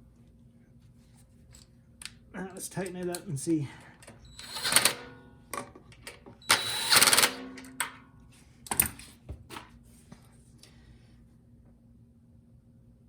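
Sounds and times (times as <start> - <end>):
hand tool ratcheting: 4.4 - 5.0.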